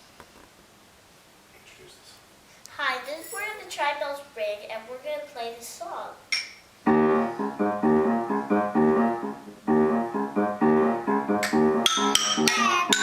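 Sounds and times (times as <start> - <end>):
rattling percussion: 3.0 - 3.8, 11.4 - 13.0
keyboard chords: 6.9 - 13.0.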